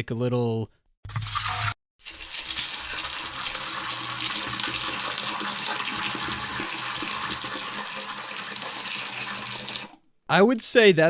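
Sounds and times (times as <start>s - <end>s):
water pouring onto metal pan: 2.0s - 10.1s.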